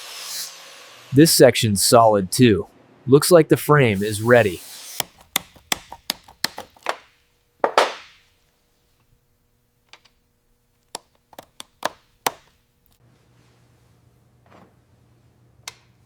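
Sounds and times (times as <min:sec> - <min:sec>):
sharp taps and knocks: 0:05.0 - 0:08.2, 0:10.9 - 0:12.6.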